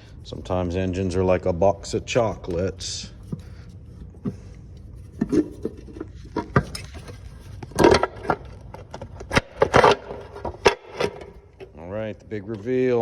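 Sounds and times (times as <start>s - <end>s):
clicks and scrapes on engine parts: 2.1s - 11.7s.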